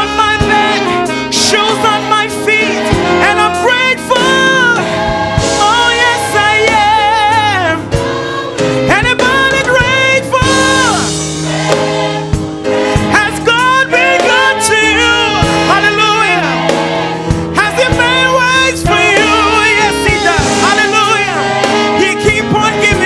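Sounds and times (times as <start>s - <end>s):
drum hits: 9.2s - 14.6s.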